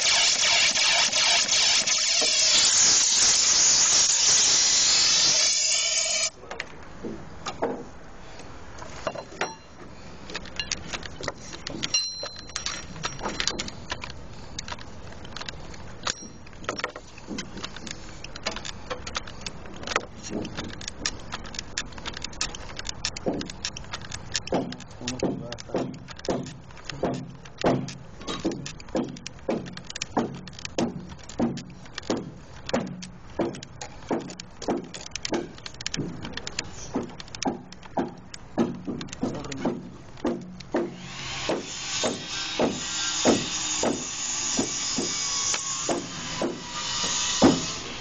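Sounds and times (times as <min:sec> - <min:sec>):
tools clicking and jingling: 0:09.0 - 0:31.4.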